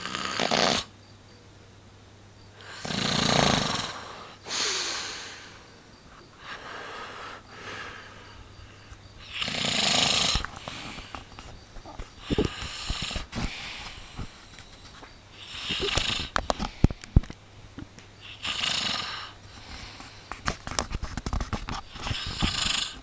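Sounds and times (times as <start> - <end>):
person snoring: 0.0 - 0.9, 2.6 - 5.6, 9.2 - 11.1, 12.2 - 14.2, 15.4 - 16.4, 18.2 - 19.8, 22.1 - 23.0.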